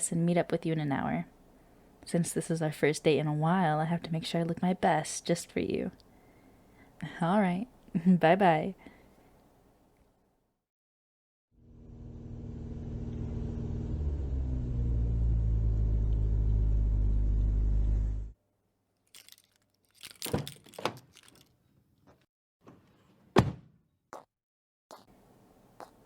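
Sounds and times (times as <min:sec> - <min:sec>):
car engine running: 0:11.6 - 0:18.3.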